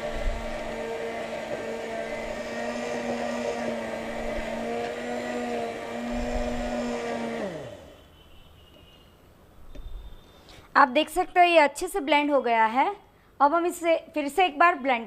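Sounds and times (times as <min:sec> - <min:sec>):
electric blender motor running: 0:00.0 - 0:08.0.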